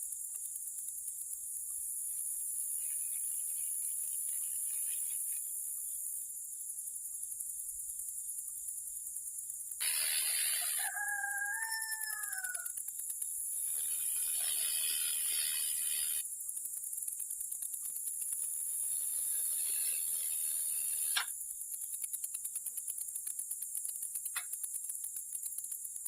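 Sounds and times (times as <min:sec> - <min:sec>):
high insect chirring: 0:00.0 - 0:26.0
rooster crowing: 0:09.8 - 0:12.8
hiss: 0:09.8 - 0:16.3, 0:17.0 - 0:26.0.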